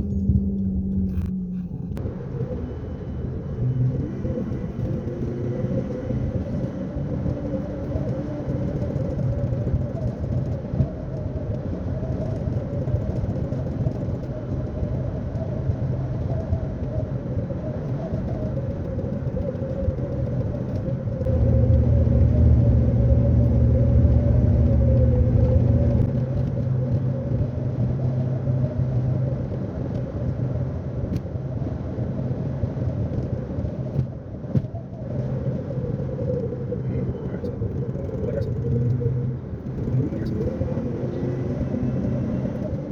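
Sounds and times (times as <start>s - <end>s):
car road and engine rumble: 0.0s - 42.9s.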